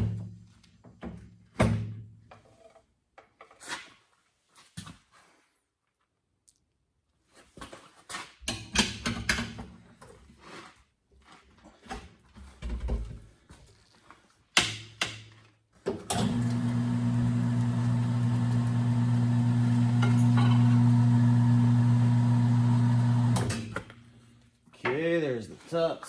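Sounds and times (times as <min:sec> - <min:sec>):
tire changer motor humming: 0:16.1 - 0:24.2.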